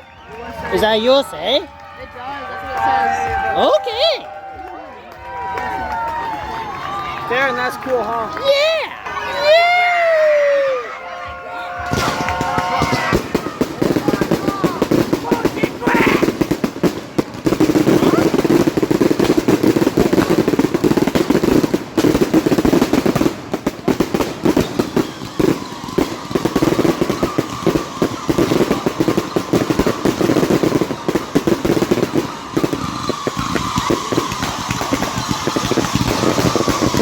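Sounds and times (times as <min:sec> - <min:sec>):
fireworks crackling and popping: 0:11.8 - 0:37.0.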